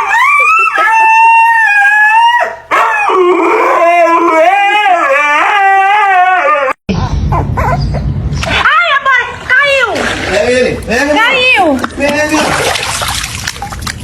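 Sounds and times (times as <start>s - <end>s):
dog howling: 0.0s - 7.9s.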